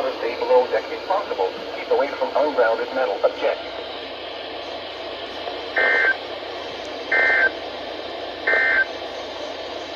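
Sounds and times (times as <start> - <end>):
radio static: 5.8 - 6.2, 7.1 - 7.5, 8.5 - 8.9
warbling data tone bursts: 5.8 - 6.2, 7.1 - 7.5, 8.5 - 8.9.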